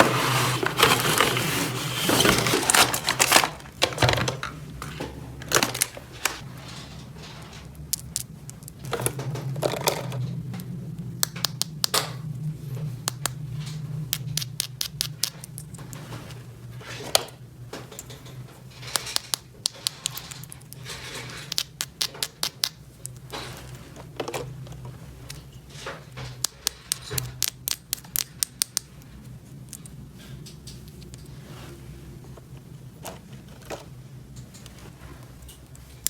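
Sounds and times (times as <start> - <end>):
scraping and rustling: 0.0 - 7.8, 30.2 - 36.0.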